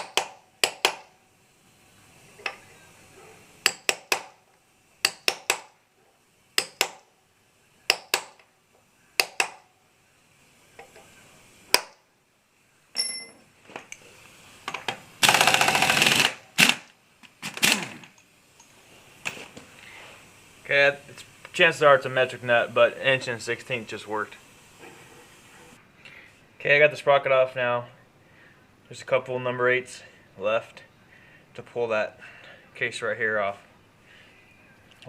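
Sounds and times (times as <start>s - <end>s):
ringing metal ping: 13.0s - 13.4s
loud rapid rattling: 15.2s - 18.1s.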